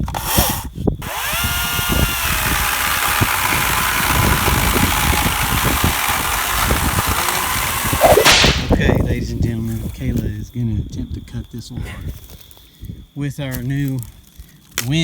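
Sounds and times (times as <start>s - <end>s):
electric chainsaw running: 1.0s - 8.7s.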